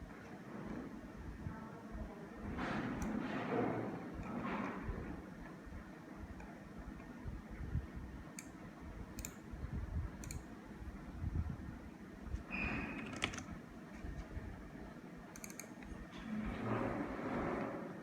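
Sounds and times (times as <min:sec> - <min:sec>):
keyboard and mouse clicks: 0:09.2 - 0:09.4, 0:10.2 - 0:10.5, 0:13.0 - 0:13.5, 0:15.3 - 0:16.0.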